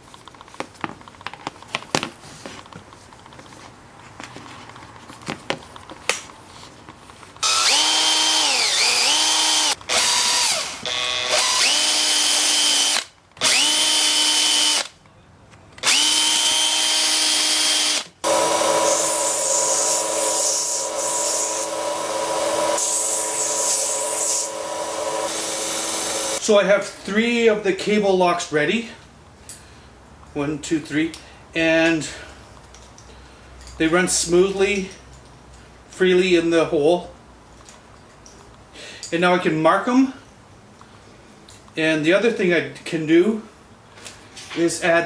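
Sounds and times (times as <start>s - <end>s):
electric drill boring into wood: 7.4s - 14.9s, 15.8s - 26.4s.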